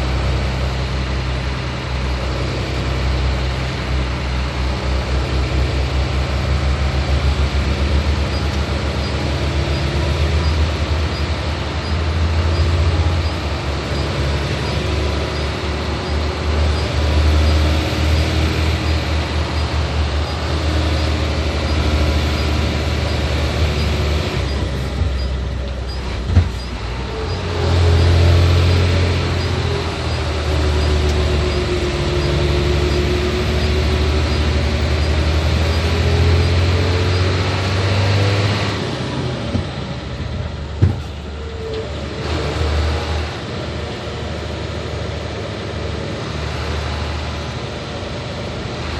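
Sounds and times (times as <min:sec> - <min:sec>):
diesel truck engine running: 0:00.0 - 0:48.9
road noise: 0:00.0 - 0:48.9.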